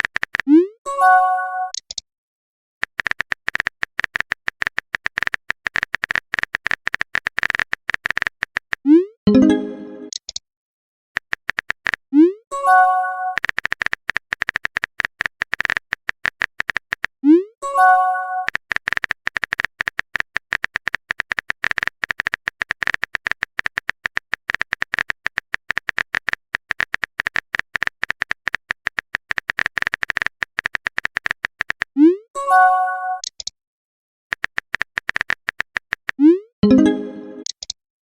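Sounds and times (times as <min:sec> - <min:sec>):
phone keyboard typing clicks: 0:00.0 - 0:00.5, 0:02.8 - 0:10.4, 0:11.2 - 0:12.0, 0:13.3 - 0:17.2, 0:18.4 - 0:32.0, 0:33.2 - 0:33.5, 0:34.3 - 0:37.8.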